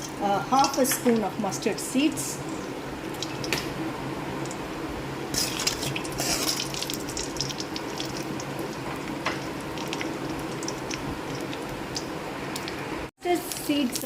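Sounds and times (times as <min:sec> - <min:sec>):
oil sizzling: 0:00.0 - 0:14.0
mustard seeds popping in oil: 0:05.4 - 0:12.8.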